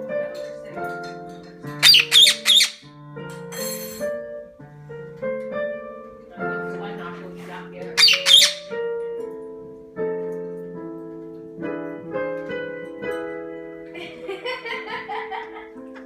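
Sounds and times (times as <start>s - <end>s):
slow piano chords: 0.0s - 16.0s.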